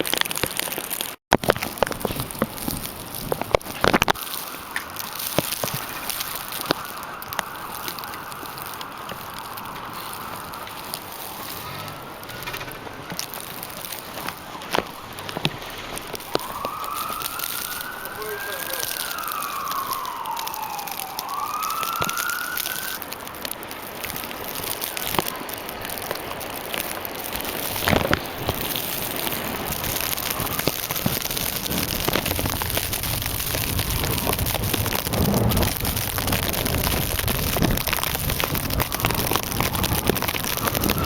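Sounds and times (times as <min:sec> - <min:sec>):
snow pelting plastic bag: 0:00.0 - 0:41.0
siren wailing: 0:04.2 - 0:24.5, 0:29.1 - 0:41.0.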